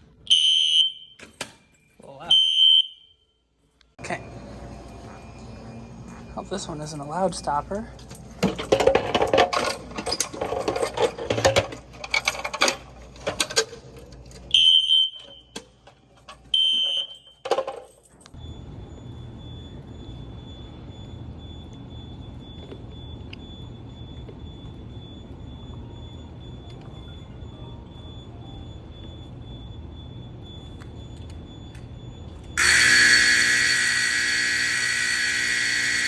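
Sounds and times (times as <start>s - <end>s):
harsh fire alarm: 0.0s - 13.7s, 14.3s - 17.6s, 18.3s - 36.0s
high-pitched alarm beeps: 0.3s - 1.2s, 1.8s - 3.4s, 4.0s - 9.0s, 14.5s - 15.6s, 16.5s - 17.4s, 18.3s - 36.0s.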